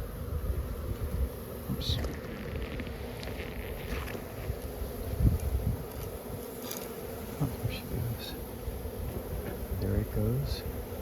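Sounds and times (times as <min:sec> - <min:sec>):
wind rumbling on microphone: 0:00.0 - 0:06.6
bees buzzing: 0:00.0 - 0:11.0.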